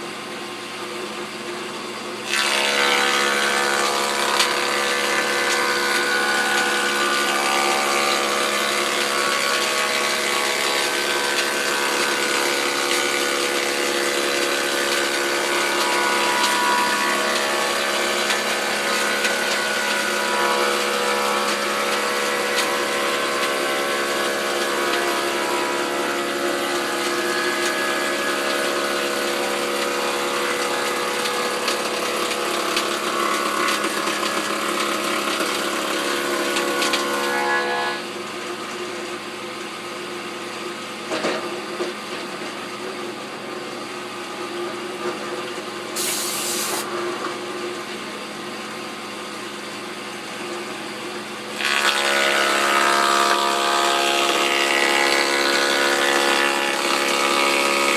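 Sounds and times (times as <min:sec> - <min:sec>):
planer cutting wood: 0:02.2 - 0:38.2, 0:46.0 - 0:46.9, 0:51.4 - 0:57.9.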